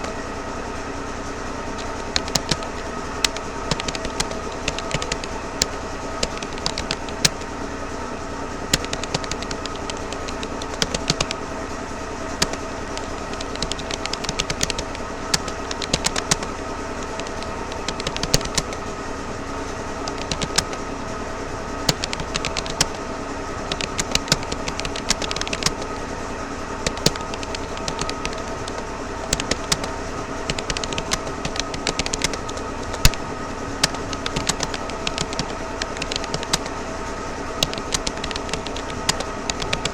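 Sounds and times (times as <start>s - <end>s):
background hum: 0.0s - 39.9s
keyboard key clicks: 1.8s - 7.5s, 8.7s - 11.4s, 12.4s - 18.8s, 20.1s - 20.8s, 21.9s - 22.9s, 23.7s - 25.9s, 26.8s - 29.9s, 30.5s - 33.2s, 33.8s - 36.8s, 37.6s - 39.9s.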